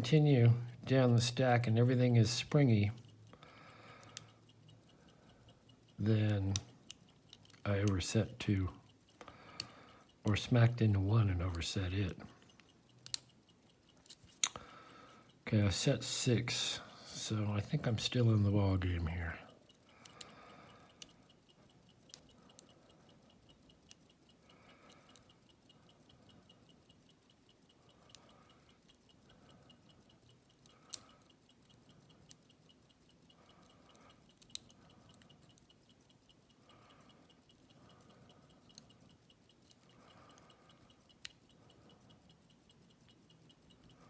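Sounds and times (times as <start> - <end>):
lock pick metallic clicks: 5.5 - 14.8.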